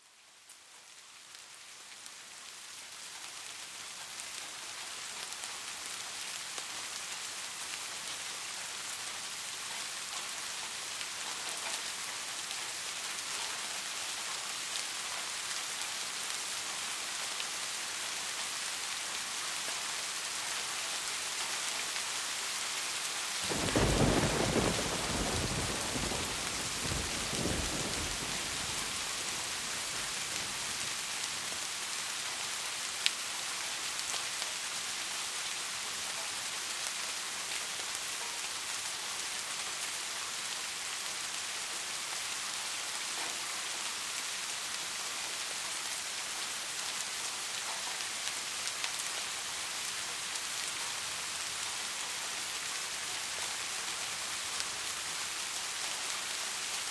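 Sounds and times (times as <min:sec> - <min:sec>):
heavy rain: 0:00.0 - 0:56.9
thunder rumbling: 0:23.5 - 0:30.3.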